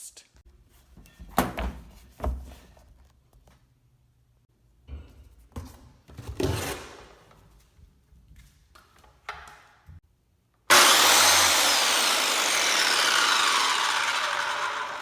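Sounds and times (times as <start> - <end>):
power saw running: 10.7 - 15.0.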